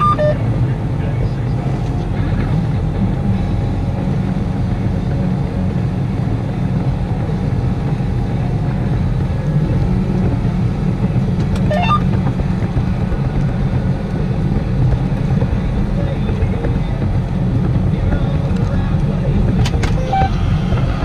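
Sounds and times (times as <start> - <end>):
tractor engine rumbling: 0.0 - 21.0
rising squeak: 11.7 - 12.1, 19.9 - 21.0.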